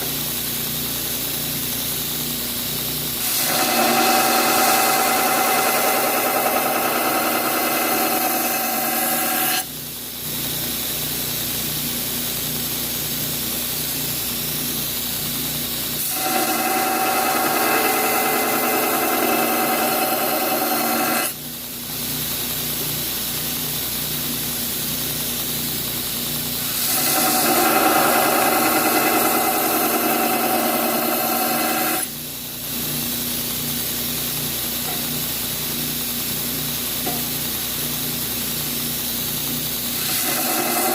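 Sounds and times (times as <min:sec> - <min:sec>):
power grinder grinding steel: 0:03.2 - 0:09.7, 0:16.0 - 0:21.4, 0:26.6 - 0:32.1, 0:40.0 - 0:40.9.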